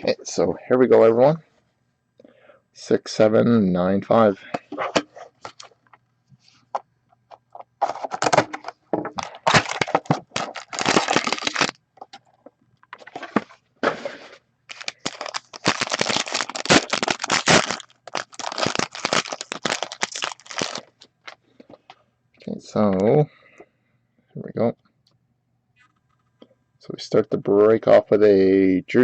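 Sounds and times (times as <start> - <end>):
plastic wrap crinkling and tearing: 9.2 - 11.8, 14.7 - 21.4.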